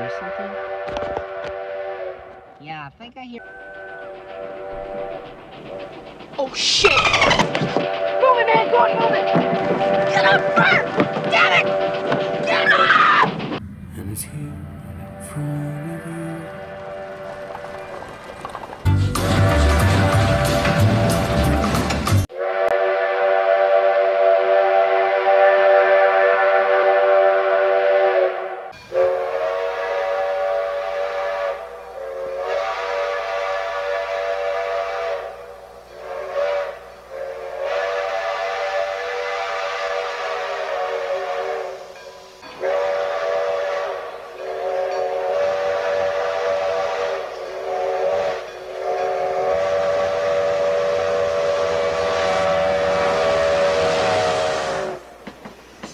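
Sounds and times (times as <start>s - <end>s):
steam locomotive whistle: 0.0s - 2.5s, 3.2s - 5.9s, 6.8s - 13.3s, 19.1s - 55.3s
low rumble: 3.7s - 22.2s.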